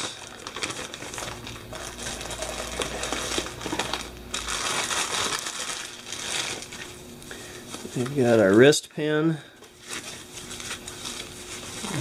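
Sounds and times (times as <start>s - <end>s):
plastic packaging rustling: 0.0s - 8.7s, 9.6s - 12.0s.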